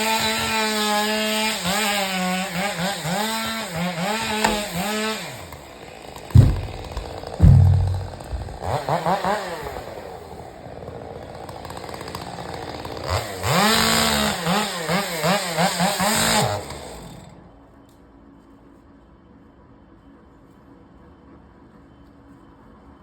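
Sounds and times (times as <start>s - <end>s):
heavy thump: 4.4s - 4.9s, 6.4s - 8.6s.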